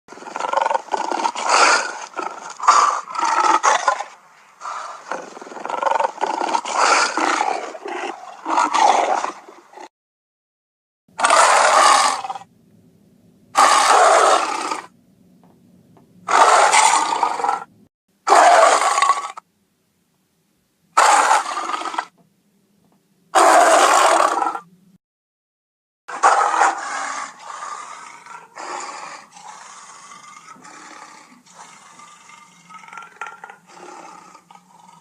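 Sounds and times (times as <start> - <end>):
lion roaring: 0.1 - 9.9, 11.2 - 12.5, 13.6 - 14.9, 16.3 - 17.7, 18.3 - 19.4, 21.0 - 22.1, 23.3 - 24.6, 26.1 - 35.0.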